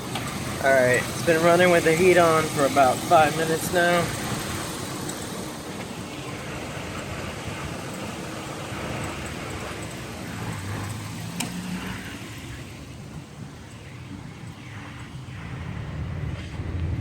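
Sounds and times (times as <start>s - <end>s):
truck engine idling: 0.0s - 17.0s.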